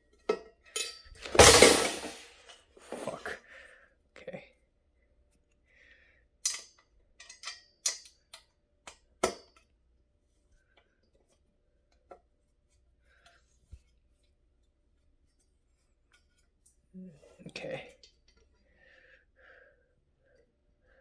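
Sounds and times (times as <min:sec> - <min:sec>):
metal desk parts clicking and knocking: 0:06.5 - 0:08.2.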